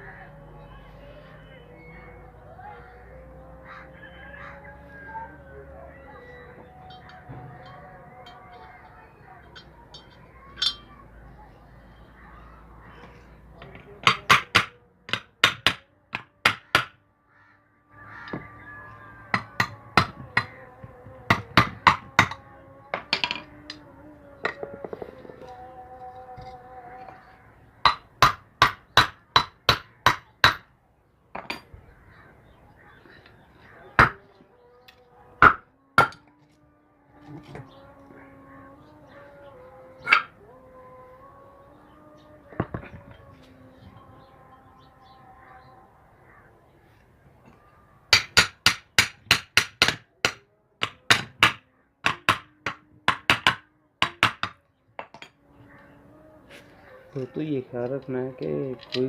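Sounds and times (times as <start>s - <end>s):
hammer strikes on metal: 27.8s - 30.7s, 35.4s - 36.2s, 48.1s - 55.3s.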